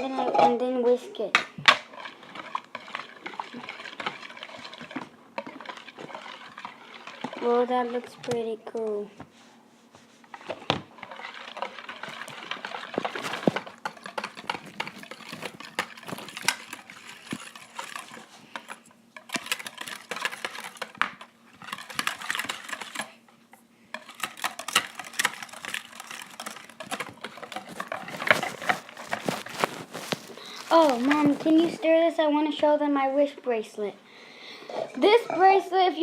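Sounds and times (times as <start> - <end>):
whisk scraping against a bowl: 1.8 - 8.4, 10.2 - 23.2, 24.0 - 31.6.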